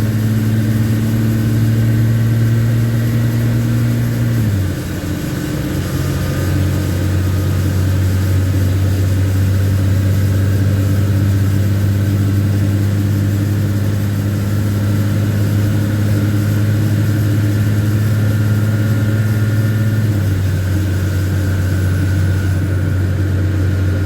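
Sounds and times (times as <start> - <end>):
truck diesel engine running: 0.0 - 24.0.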